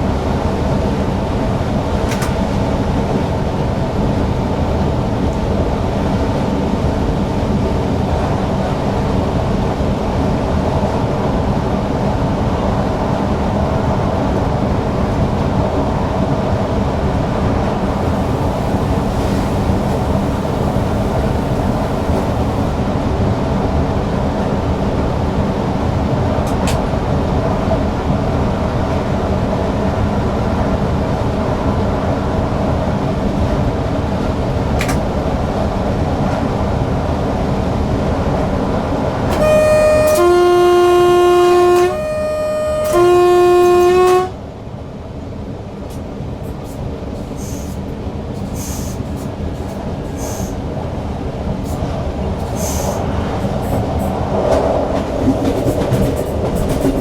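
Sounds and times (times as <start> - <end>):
electric train running on track: 0.0 - 57.0
train horn blasts: 17.8 - 22.8, 39.3 - 44.5.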